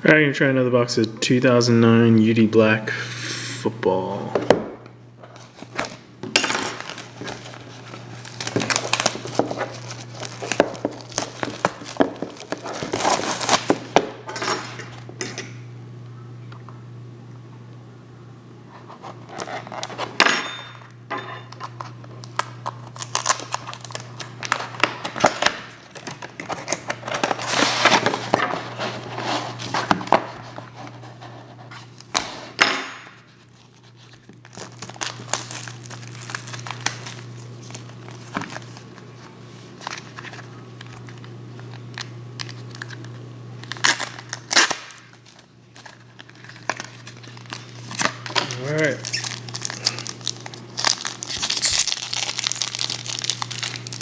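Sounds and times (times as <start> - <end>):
steady low hum: 0.0 - 54.0
plastic wrapping crinkling and tearing: 5.4 - 6.1, 6.8 - 14.0, 21.5 - 31.2, 33.3 - 54.0.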